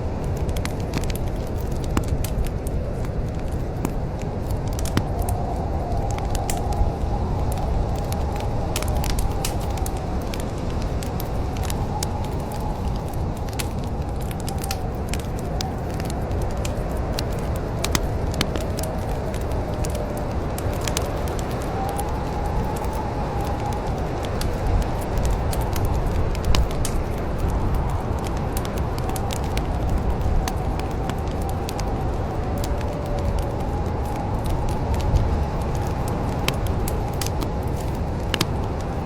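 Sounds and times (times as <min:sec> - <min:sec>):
low rumble of flames: 0:00.0 - 0:39.0
wood fire crackling and popping: 0:00.0 - 0:39.0.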